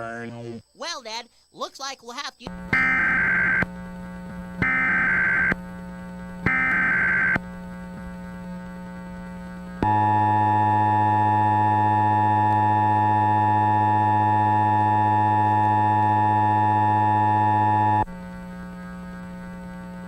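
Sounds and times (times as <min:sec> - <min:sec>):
two-tone electronic alert tone: 0:06.5 - 0:07.4, 0:09.8 - 0:18.0.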